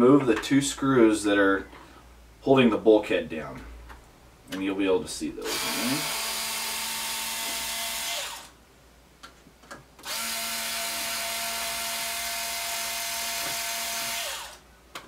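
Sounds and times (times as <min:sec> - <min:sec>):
power driver whining: 0:05.4 - 0:08.5, 0:10.0 - 0:14.6.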